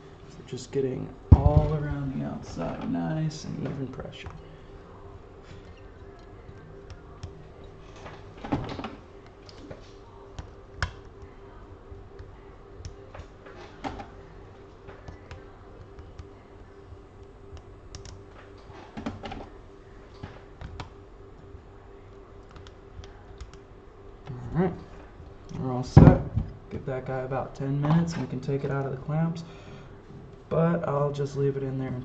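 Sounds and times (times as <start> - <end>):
faint steady hum: 0.0 - 32.0.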